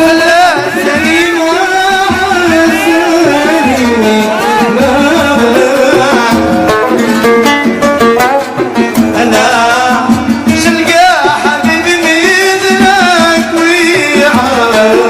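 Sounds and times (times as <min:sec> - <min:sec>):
hand drum beat: 0:00.0 - 0:15.0
plucked string instrument melody: 0:00.0 - 0:15.0.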